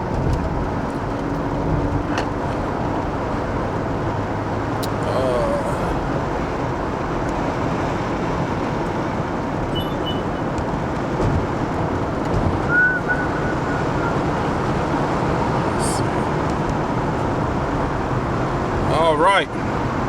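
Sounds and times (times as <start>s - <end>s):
road and wind noise in car: 0.0s - 20.0s
faint whistle-like tone: 9.8s - 10.4s, 12.7s - 14.3s.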